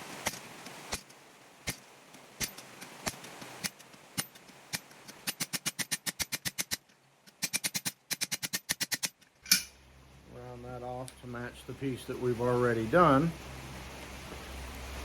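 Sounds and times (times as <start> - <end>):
hammer striking steel on anvil: 9.5 - 9.8.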